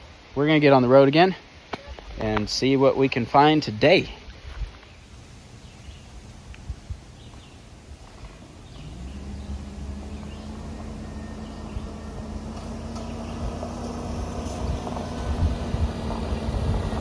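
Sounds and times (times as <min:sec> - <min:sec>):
low road rumble: 0:01.9 - 0:17.0
vehicle engine hum: 0:04.8 - 0:17.0.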